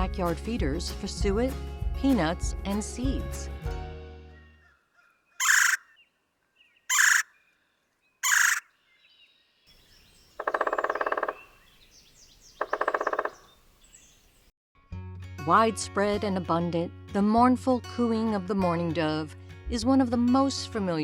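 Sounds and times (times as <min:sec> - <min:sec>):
woodpecker calls: 0:04.6 - 0:06.1, 0:06.9 - 0:07.6, 0:08.2 - 0:08.8, 0:09.8 - 0:14.4.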